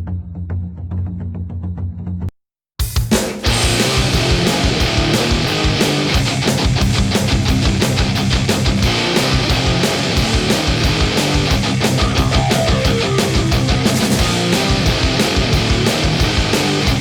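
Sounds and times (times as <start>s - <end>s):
fast drum beat: 2.8s - 17.0s
distorted electric guitar: 3.4s - 17.0s.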